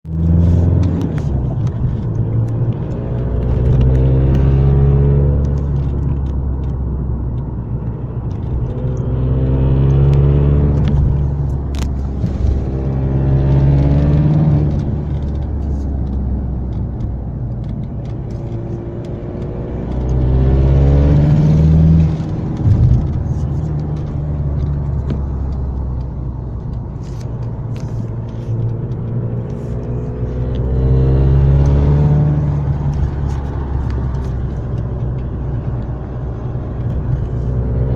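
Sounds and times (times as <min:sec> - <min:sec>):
diesel engine revving: 0:00.1 - 0:07.2, 0:07.8 - 0:37.9.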